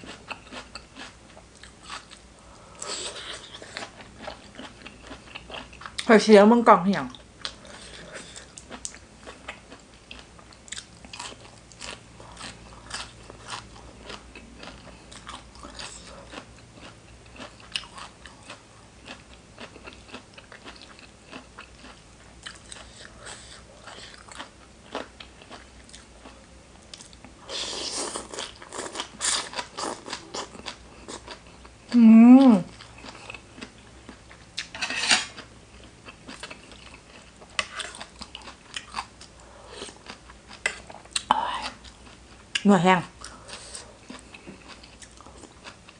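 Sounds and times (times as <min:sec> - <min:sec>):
crunchy chewing and biting: 0:07.4 - 0:31.7, 0:32.7 - 0:42.6, 0:43.2 - 0:45.9
person humming: 0:32.0 - 0:32.7.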